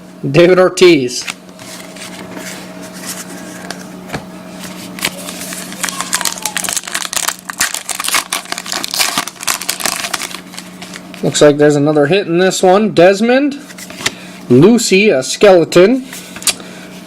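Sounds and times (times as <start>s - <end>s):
foil wrapper crinkling: 4.6s - 11.4s.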